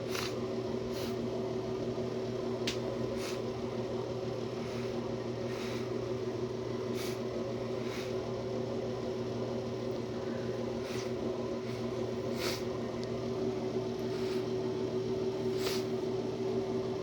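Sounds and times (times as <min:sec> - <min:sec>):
steady electrical hum: 0:00.0 - 0:17.0
person sniffling: 0:06.9 - 0:08.2, 0:10.8 - 0:12.7, 0:15.5 - 0:16.0.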